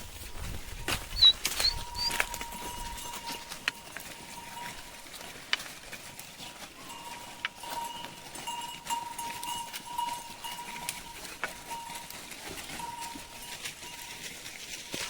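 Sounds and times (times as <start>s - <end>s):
hooves and brush rustling: 0.0s - 15.0s
high ringing tone: 1.7s - 4.9s.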